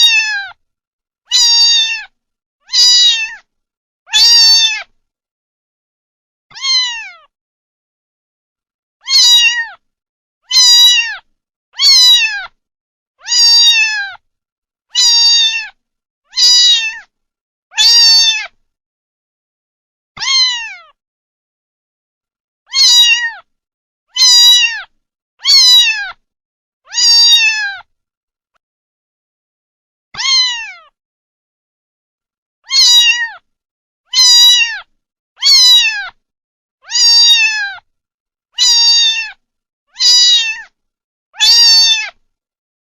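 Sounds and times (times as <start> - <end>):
kitten meowing: 0.0 - 0.6, 1.3 - 2.1, 2.7 - 3.5, 4.1 - 4.9, 6.5 - 7.3, 9.0 - 9.8, 10.5 - 12.6, 13.2 - 14.2, 15.0 - 17.1, 17.7 - 18.6, 20.2 - 21.0, 22.7 - 23.5, 24.1 - 26.2, 26.9 - 27.9, 30.2 - 30.9, 32.6 - 33.4, 34.1 - 36.2, 36.8 - 37.8, 38.6 - 40.7, 41.4 - 42.2.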